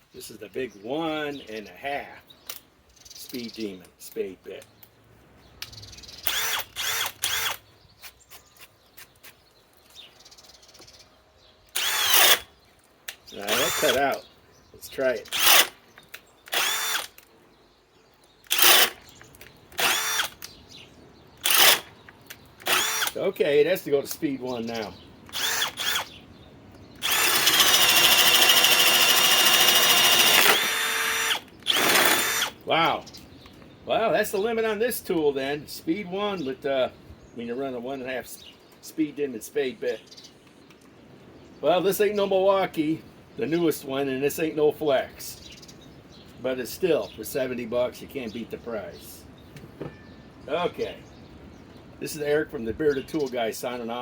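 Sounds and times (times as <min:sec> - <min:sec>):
cordless drill motor whining: 0:06.2 - 0:07.6, 0:11.7 - 0:12.5, 0:13.4 - 0:14.2, 0:15.3 - 0:15.8, 0:16.5 - 0:17.2, 0:18.4 - 0:19.1, 0:19.7 - 0:20.4, 0:21.4 - 0:21.9, 0:22.6 - 0:23.2, 0:25.3 - 0:26.2, 0:27.0 - 0:32.6.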